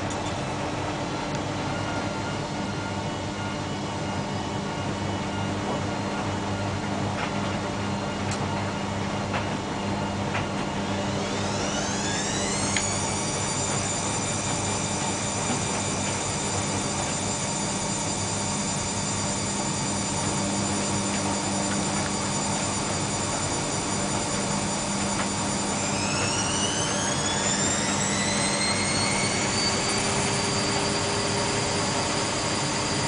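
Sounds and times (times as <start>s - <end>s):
washing machine spin whine: 0.0s - 33.0s
steady hum: 10.6s - 33.0s.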